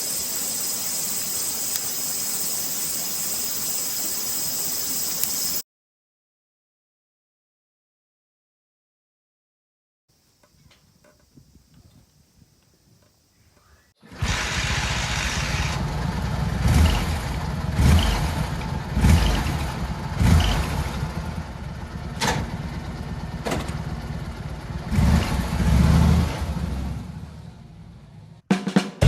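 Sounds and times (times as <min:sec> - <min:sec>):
motorcycle engine running: 0:14.0 - 0:28.4.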